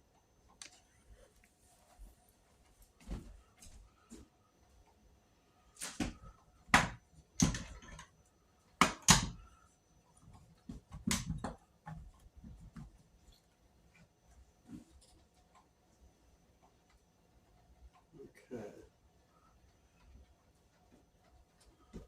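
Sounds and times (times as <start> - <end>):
vacuum parts knocking and clicking: 5.8 - 8.2, 8.8 - 9.5, 10.2 - 13.2.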